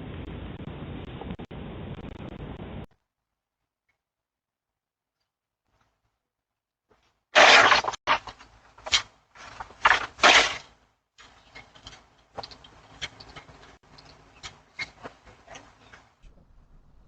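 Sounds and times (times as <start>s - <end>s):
rustling: 6.9s - 17.0s.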